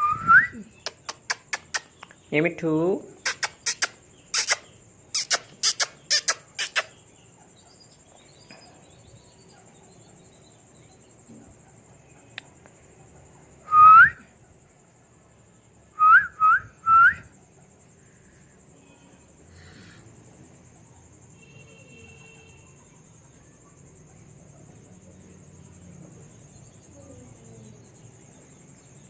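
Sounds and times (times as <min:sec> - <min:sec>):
parrot rising whistles: 0:00.0 - 0:00.6, 0:13.7 - 0:14.2, 0:16.0 - 0:17.3
parrot screeching: 0:03.2 - 0:06.9.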